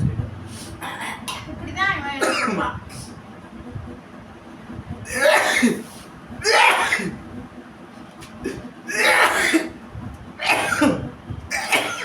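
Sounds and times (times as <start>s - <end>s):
person coughing hard: 2.2s - 2.7s, 5.1s - 5.8s, 6.4s - 7.2s, 8.5s - 9.8s, 10.4s - 12.0s.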